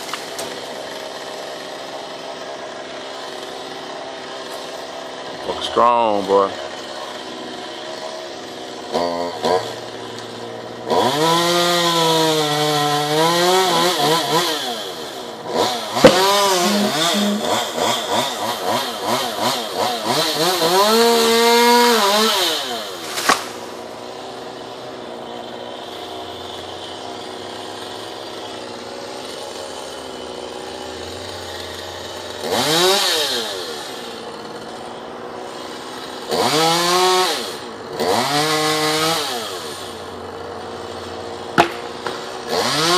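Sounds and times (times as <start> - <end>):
chainsaw revving and cutting: 0.0 - 42.9
sharp knocks: 16.0 - 17.5.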